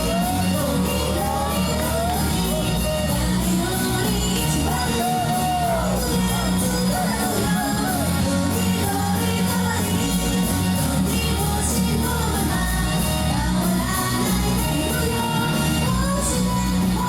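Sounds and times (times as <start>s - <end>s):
people shouting: 0.0s - 3.4s, 4.6s - 8.2s
live pop music with singing: 0.0s - 17.0s.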